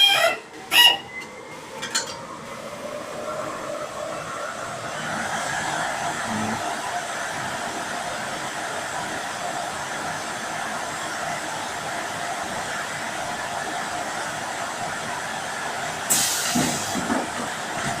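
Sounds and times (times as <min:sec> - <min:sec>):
venting air blast: 0:16.1 - 0:17.0
pneumatic machine hiss: 0:16.1 - 0:17.1.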